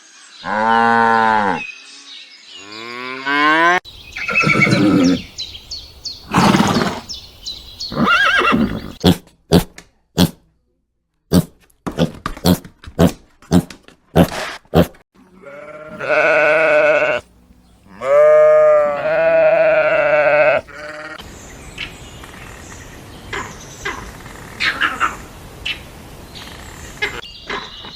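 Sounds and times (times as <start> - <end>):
livestock calling: 2.6 - 9.0, 15.2 - 21.2.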